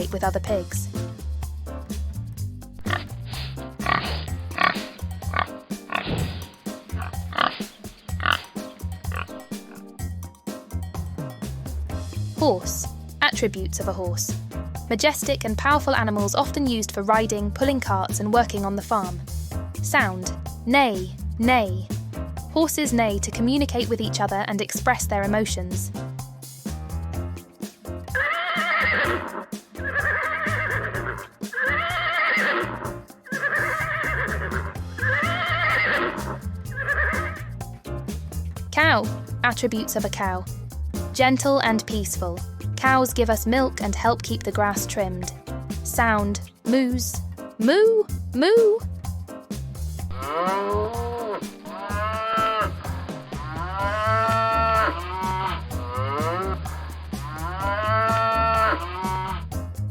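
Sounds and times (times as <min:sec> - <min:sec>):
background music with steady beat: 0:00.0 - 0:59.9
cow mooing: 0:03.8 - 0:06.2, 0:33.3 - 0:37.4, 0:50.1 - 0:52.8, 0:53.5 - 0:56.6, 0:57.3 - 0:59.4
horse whinnying: 0:28.1 - 0:37.5, 0:50.1 - 0:56.6, 0:57.2 - 0:59.5.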